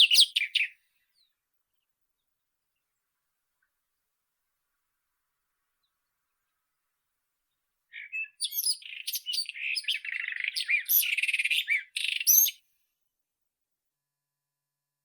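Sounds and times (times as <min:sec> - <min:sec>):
bird singing whistled trills: 0:00.0 - 0:00.8, 0:07.9 - 0:12.6.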